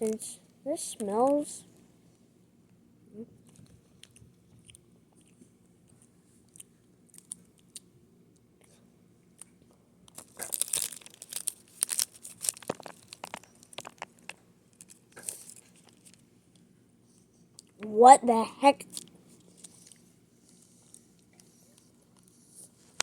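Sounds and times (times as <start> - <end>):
person crunching a snack: 10.1 - 16.2.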